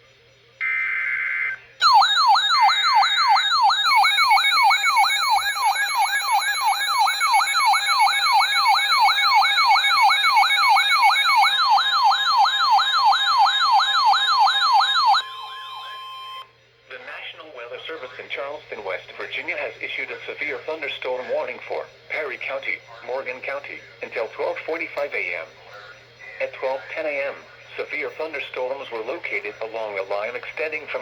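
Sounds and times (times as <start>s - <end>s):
faint steady tones: 0.0s - 31.0s
electronic alert siren wailing: 0.6s - 16.5s.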